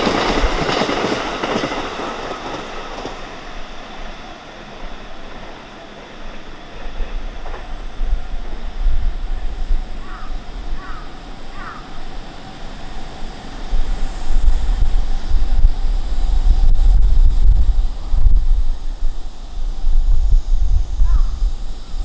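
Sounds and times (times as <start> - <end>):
wind rumbling on microphone: 0.0 - 22.0
crow cawing: 10.0 - 12.0.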